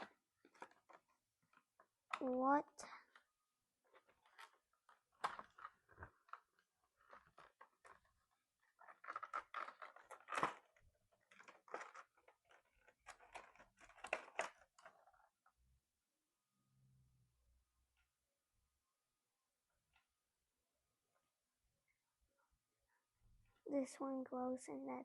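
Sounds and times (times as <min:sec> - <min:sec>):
plastic packaging crinkling: 0:03.8 - 0:15.3.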